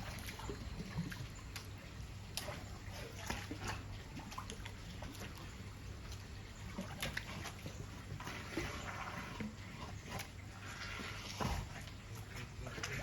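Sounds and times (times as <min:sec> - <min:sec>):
low steady hum: 0:00.0 - 0:13.0
water trickling and splashing: 0:00.0 - 0:13.0.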